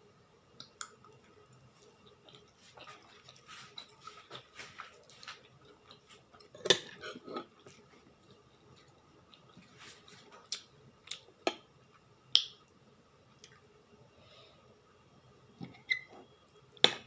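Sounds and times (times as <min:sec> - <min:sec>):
person chewing: 0:00.6 - 0:11.3.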